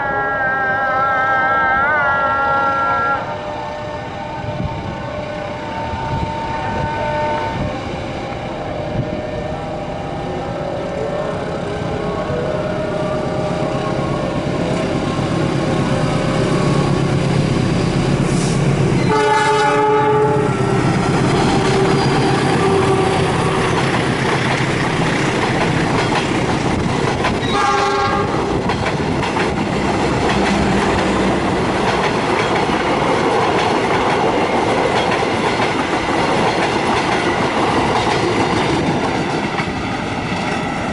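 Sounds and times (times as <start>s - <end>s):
train horn blasts: 0.0s - 10.4s, 18.4s - 23.8s, 27.4s - 28.6s
passing diesel train: 0.0s - 40.9s
wheels clacking on rails: 13.0s - 40.9s.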